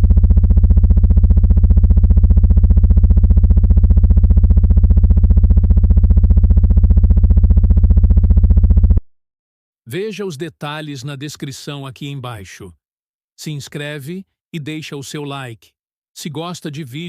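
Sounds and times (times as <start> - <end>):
low pulsing electronic drone: 0.0 - 6.8.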